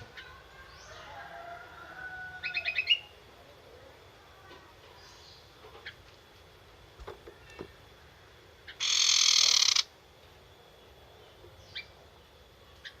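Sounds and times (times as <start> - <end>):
bird harsh rattling call: 8.7 - 9.9.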